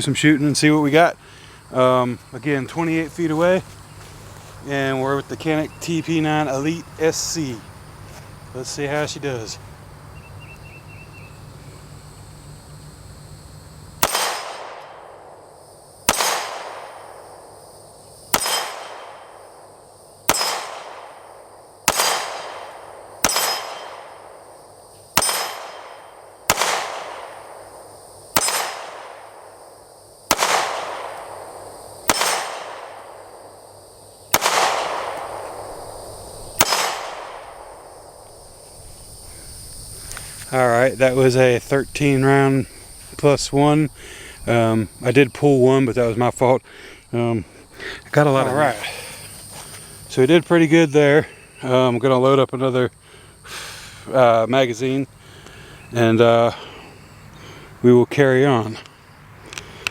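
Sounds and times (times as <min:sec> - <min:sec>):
pistol shots: 0:14.0 - 0:15.4, 0:16.0 - 0:17.6, 0:18.3 - 0:24.5, 0:25.1 - 0:29.6, 0:30.3 - 0:33.7, 0:34.3 - 0:38.5.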